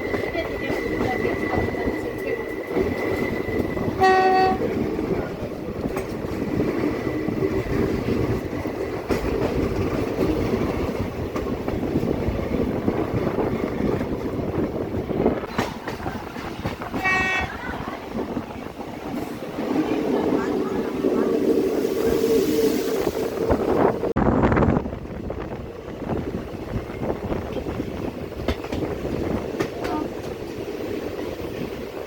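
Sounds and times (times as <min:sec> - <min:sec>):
train rumbling on rails: 0:00.0 - 0:32.0
train horn toot: 0:03.9 - 0:04.8, 0:16.9 - 0:17.6.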